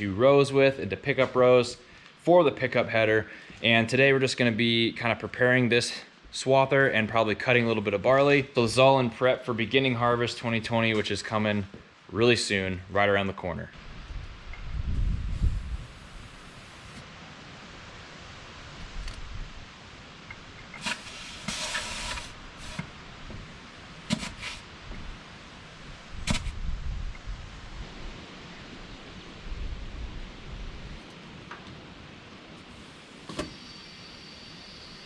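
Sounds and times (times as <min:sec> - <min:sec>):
compressed air hissing: 0:15.2 - 0:17.0, 0:20.8 - 0:26.6.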